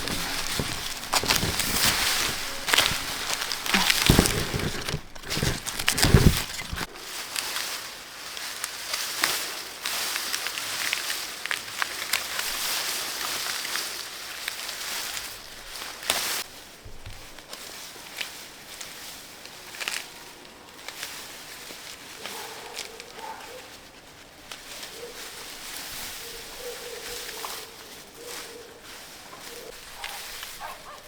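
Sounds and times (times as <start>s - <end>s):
soft thumps: 0.0s - 6.9s
leaves and stems rustling: 0.0s - 31.0s.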